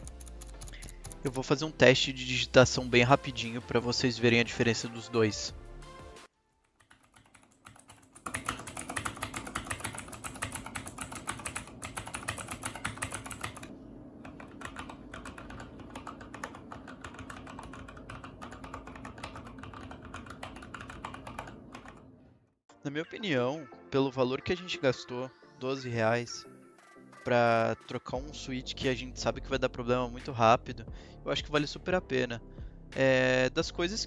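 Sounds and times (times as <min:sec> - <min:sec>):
fast typing on mechanical keyboard: 0:00.0 - 0:01.4, 0:06.8 - 0:22.1.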